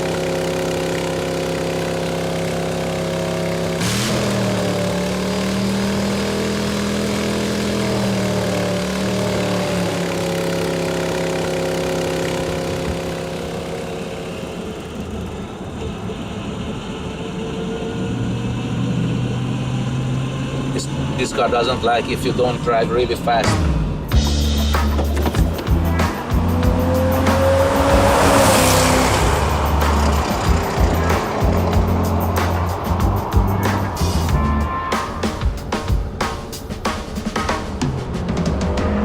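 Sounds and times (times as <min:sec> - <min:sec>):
sharp engine burst: 0:00.0 - 0:14.4, 0:22.3 - 0:39.0
car engine running: 0:00.0 - 0:39.0.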